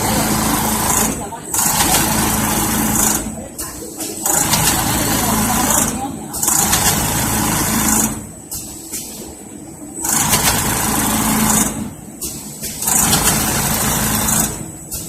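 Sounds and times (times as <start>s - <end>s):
sewing machine running in bursts: 0.0s - 3.4s, 4.2s - 8.4s, 10.0s - 12.0s, 12.7s - 14.9s.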